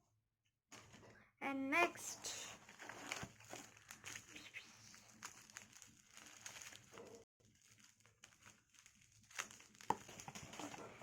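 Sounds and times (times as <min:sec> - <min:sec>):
packaging crinkling: 0:02.6 - 0:11.0.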